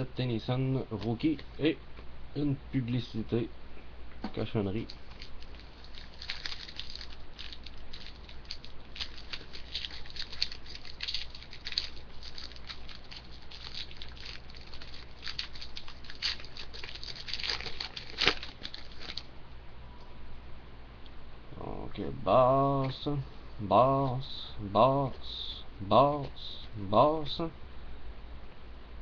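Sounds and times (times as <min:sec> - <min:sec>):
cards and wrapper crinkling: 0:04.8 - 0:19.3.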